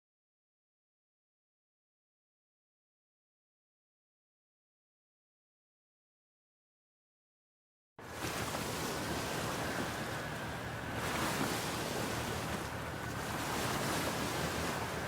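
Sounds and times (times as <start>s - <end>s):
rushing outdoor noise: 8.0s - 15.0s.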